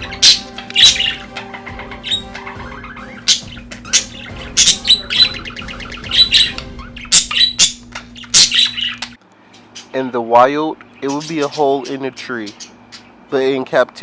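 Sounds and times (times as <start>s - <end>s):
budgerigars chirping and squawking: 0.0s - 13.6s.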